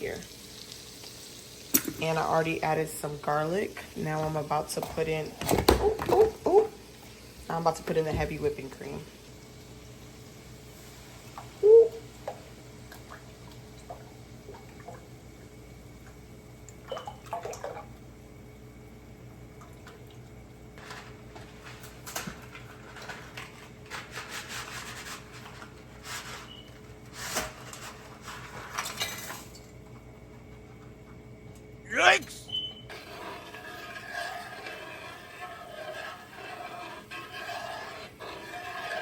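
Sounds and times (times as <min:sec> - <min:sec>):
utensil scraping a pan: 0:20.8 - 0:29.1, 0:32.9 - 0:39.0.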